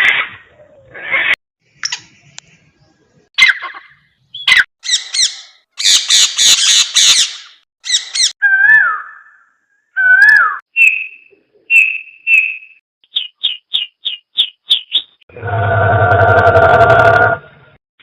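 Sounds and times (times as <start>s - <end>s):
harsh bird squawks: 3.4s - 11.2s
bird call dipping and rising: 7.9s - 15.2s.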